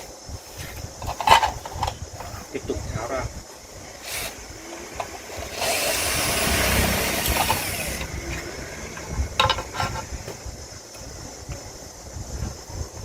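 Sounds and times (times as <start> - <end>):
loud mechanical rasping: 4.0 - 10.1.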